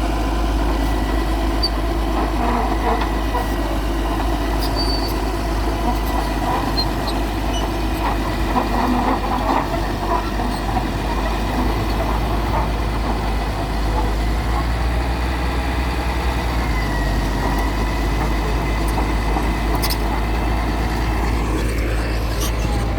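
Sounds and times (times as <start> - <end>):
large engine rumbling: 0.0 - 22.9.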